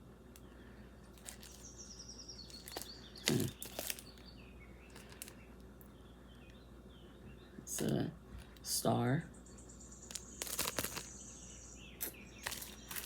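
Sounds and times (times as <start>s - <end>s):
jewelry packaging clicks and rustles: 1.1s - 1.7s, 2.5s - 4.2s, 4.9s - 5.4s, 10.1s - 11.1s, 12.4s - 13.0s.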